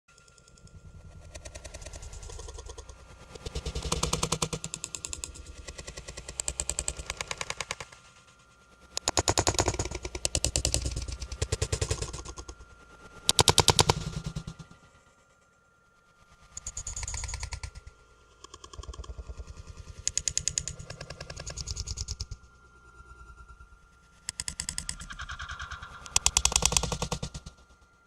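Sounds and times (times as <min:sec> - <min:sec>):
fast rattling clicks: 0:09.0 - 0:12.5, 0:13.3 - 0:14.6, 0:20.0 - 0:22.4, 0:24.3 - 0:27.5.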